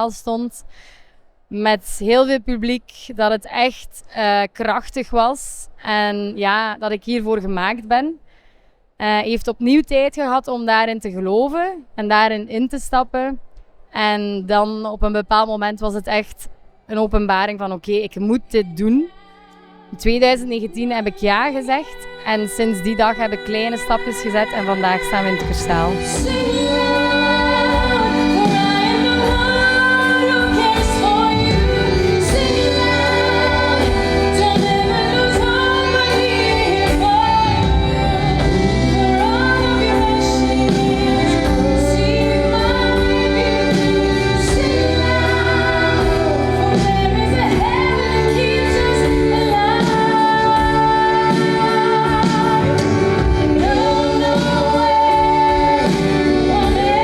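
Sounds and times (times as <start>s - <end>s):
woman singing: 17.9s - 57.0s
backing voices: 22.0s - 57.0s
band playing: 23.7s - 57.0s.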